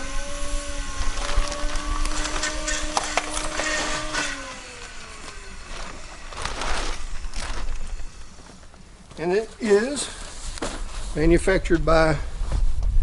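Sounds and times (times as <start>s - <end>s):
packaging clicks and rustles: 1.0s - 9.9s.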